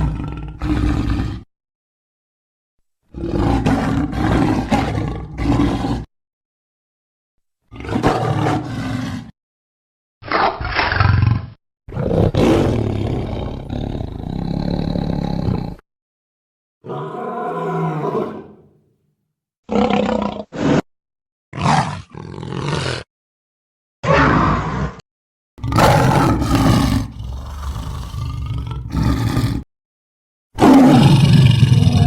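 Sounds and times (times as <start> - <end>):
big cat creature roars: 0.0 - 1.5, 3.1 - 6.1, 7.7 - 9.3, 10.3 - 15.8, 16.8 - 18.9, 19.7 - 20.8, 21.6 - 23.1, 24.0 - 25.0, 25.6 - 29.6, 30.6 - 32.0.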